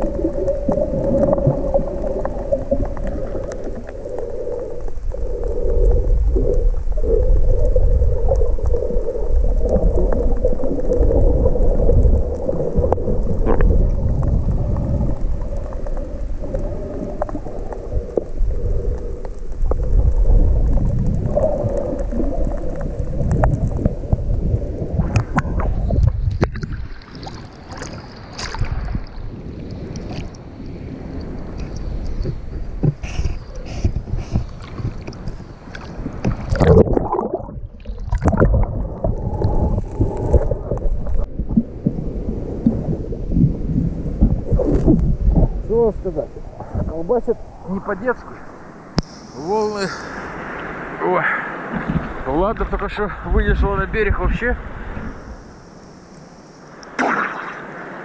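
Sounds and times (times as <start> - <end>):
rough sea surf churning: 0.0 - 58.0
sharp water splashes: 25.0 - 29.2, 56.7 - 58.0.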